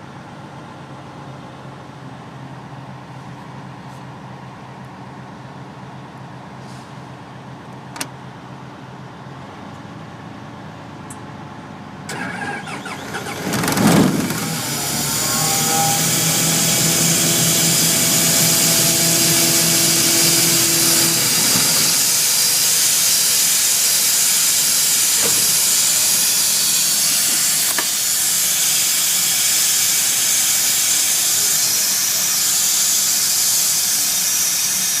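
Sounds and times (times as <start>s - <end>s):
air compressor humming: 12.1s - 33.5s
compressed air rushing out: 12.2s - 23.0s.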